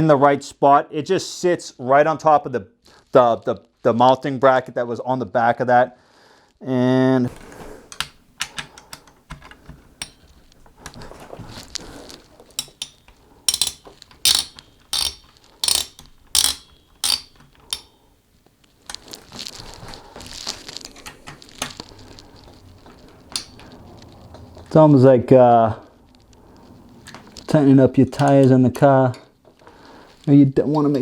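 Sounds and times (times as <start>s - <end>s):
screwdriver clicking on screws: 7.9s - 10.3s, 12.6s - 17.9s, 23.3s - 23.7s
metal scraping and rattling: 10.0s - 10.3s, 12.6s - 17.9s.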